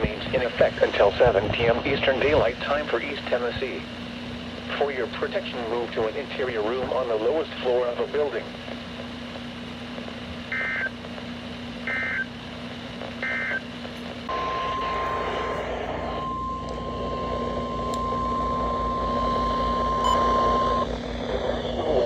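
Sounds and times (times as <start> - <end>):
low hum: 0.0 - 22.0
radio hiss: 0.0 - 22.0
steady warning alarm tone: 10.5 - 10.9, 11.8 - 12.3, 13.2 - 13.6, 14.3 - 22.0.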